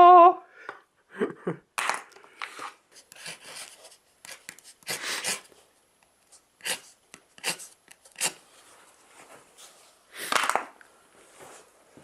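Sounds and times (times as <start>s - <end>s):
wooden pen rubbing and scraping: 6.6s - 8.4s.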